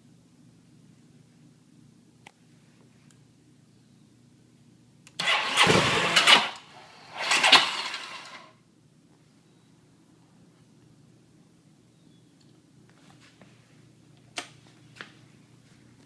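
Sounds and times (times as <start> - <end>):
motorcycle engine cranking and dying: 5.2 - 8.5.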